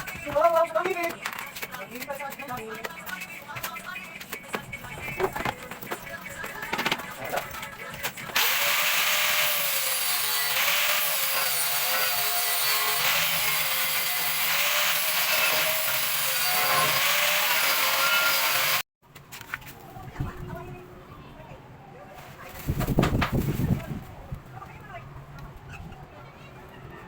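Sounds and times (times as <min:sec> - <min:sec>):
power tool whining: 0:08.4 - 0:18.8.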